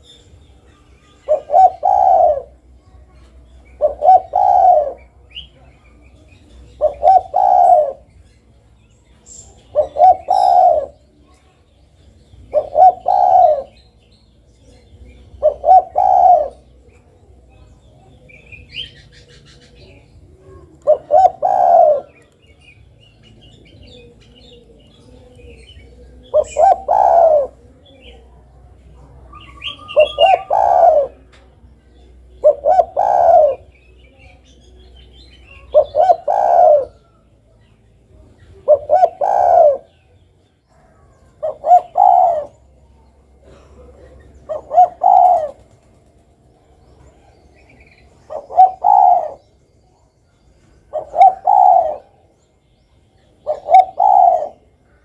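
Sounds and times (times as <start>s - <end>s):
small birds chirping faintly: 0.0s - 55.0s
dove cooing: 1.2s - 8.2s, 9.3s - 11.1s, 12.3s - 14.0s, 14.9s - 17.5s, 18.4s - 22.6s, 23.2s - 31.4s, 32.4s - 34.4s, 35.4s - 37.3s, 38.5s - 46.3s, 47.0s - 49.6s, 50.8s - 52.3s, 53.4s - 55.0s.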